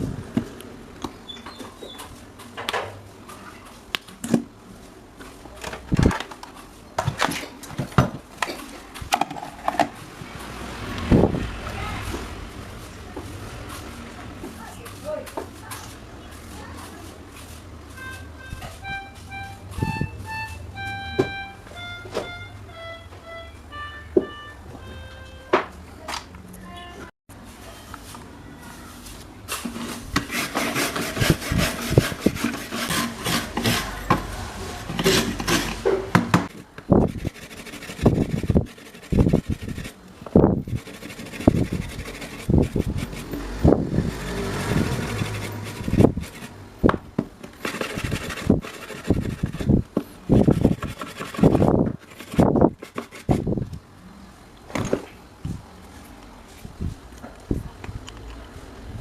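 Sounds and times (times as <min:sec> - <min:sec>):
hand tool scraping: 0:29.7 - 0:36.0, 0:36.9 - 0:43.5, 0:44.1 - 0:46.6, 0:47.5 - 0:53.4.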